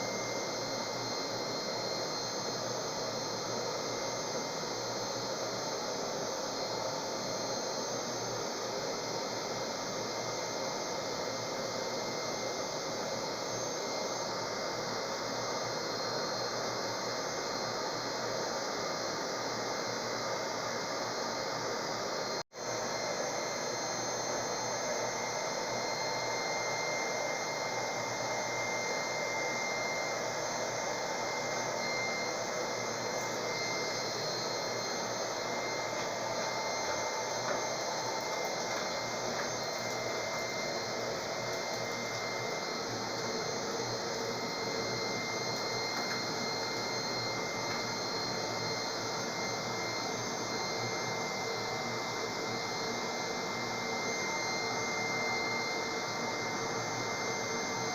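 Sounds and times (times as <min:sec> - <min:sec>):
hair dryer whooshing and whining: 0:00.0 - 0:57.9.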